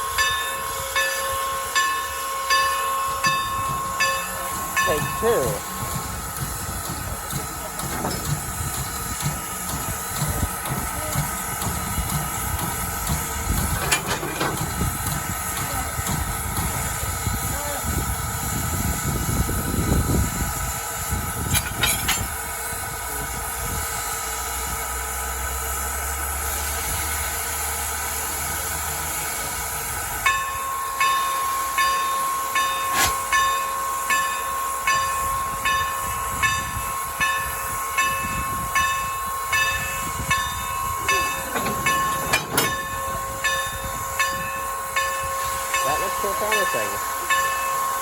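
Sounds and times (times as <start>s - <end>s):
locomotive bell ringing: 0.0s - 16.0s, 30.2s - 48.0s
steam locomotive hissing: 0.0s - 48.0s
metallic clanks: 12.1s - 14.8s, 21.5s - 22.3s, 41.1s - 43.6s.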